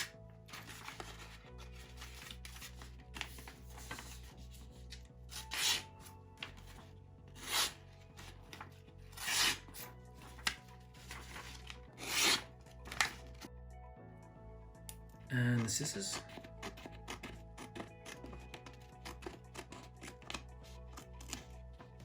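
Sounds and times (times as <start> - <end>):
paper rustling: 0.0 - 13.5
knife slicing through paper: 5.3 - 6.0, 7.4 - 7.8, 9.2 - 13.2.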